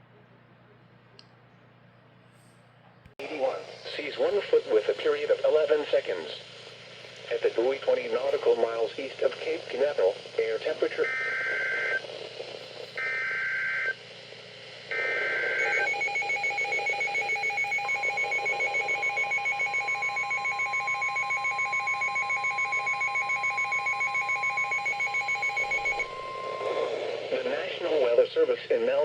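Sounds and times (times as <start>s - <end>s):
steady warning alarm tone: 11.0s - 12.0s, 13.0s - 14.0s, 14.9s - 27.6s
fast-pulsing alarm beep: 15.0s - 27.0s
shrill data bursts: 15.0s - 27.6s.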